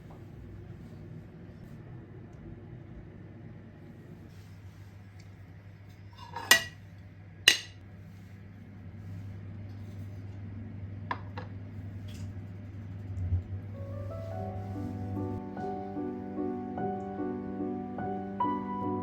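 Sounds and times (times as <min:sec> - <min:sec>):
steady low hum: 0:00.0 - 0:18.4
dishes and cutlery clinking: 0:06.1 - 0:06.8, 0:07.5 - 0:07.8.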